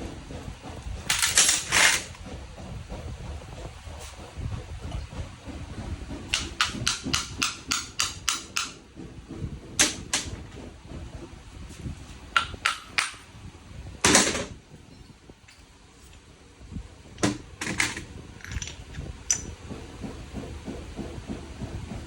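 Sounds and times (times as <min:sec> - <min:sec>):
tool tapping metal: 0:06.3 - 0:08.8, 0:12.4 - 0:13.3, 0:17.2 - 0:19.5.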